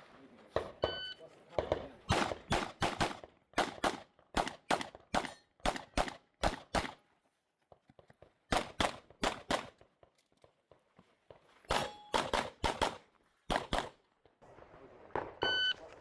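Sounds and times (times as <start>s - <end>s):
pistol firing rapidly: 2.1s - 7.0s, 8.5s - 9.7s, 11.7s - 14.0s.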